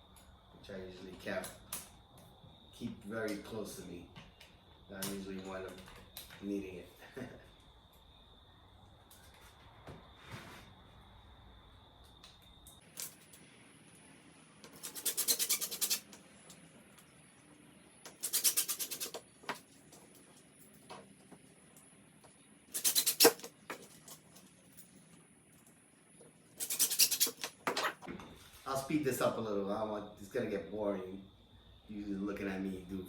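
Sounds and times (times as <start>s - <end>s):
screwdriver bit rapid clicking: 14.8s - 16.1s, 18.1s - 19.2s, 22.7s - 23.5s, 26.6s - 27.5s.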